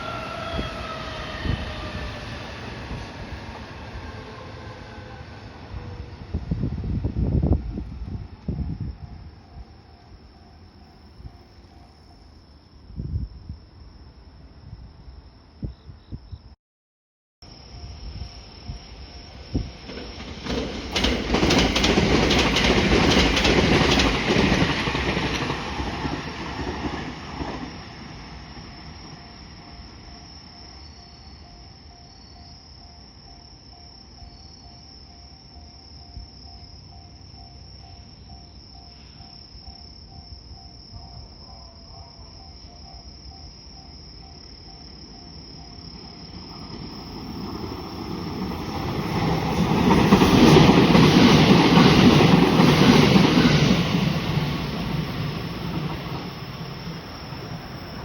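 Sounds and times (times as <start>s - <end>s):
train wheels clattering on rails: 19.6s - 28.7s, 46.4s - 58.0s.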